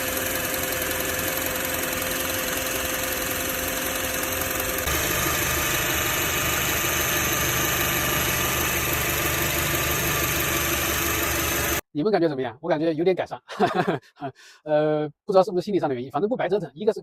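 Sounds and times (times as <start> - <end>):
minivan engine idling: 0.0 - 11.8.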